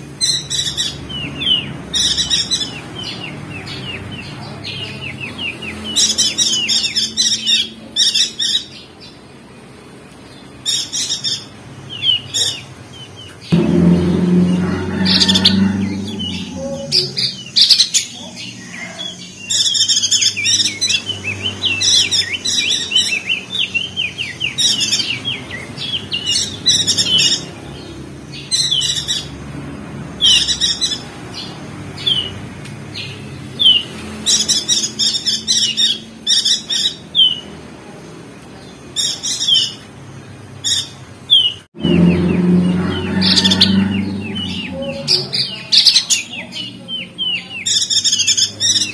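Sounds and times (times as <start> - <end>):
low hum: 13.5 - 17.9, 41.8 - 45.6.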